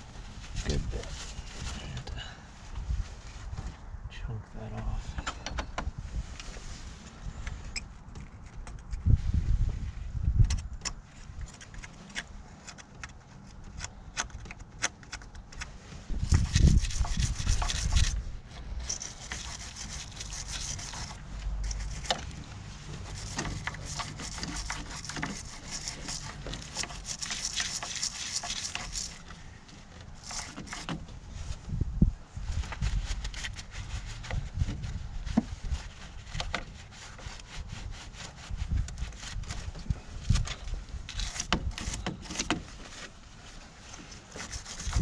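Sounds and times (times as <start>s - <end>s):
brush scrubbing metal: 16.1s - 31.6s, 32.6s - 40.2s, 41.0s - 45.0s.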